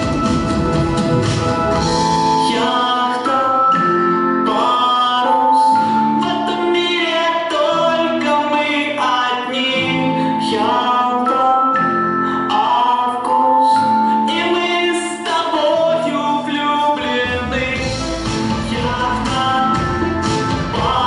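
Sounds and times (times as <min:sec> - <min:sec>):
instrumental backing music: 0:00.0 - 0:21.0.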